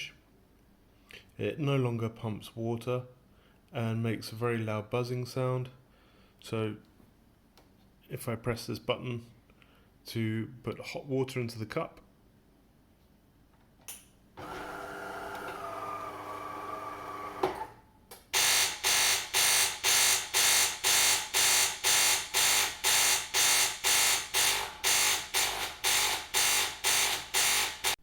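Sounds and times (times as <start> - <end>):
loud pulsing pump buzz: 14.4 - 17.7, 18.4 - 28.0
water pump humming: 14.4 - 17.7.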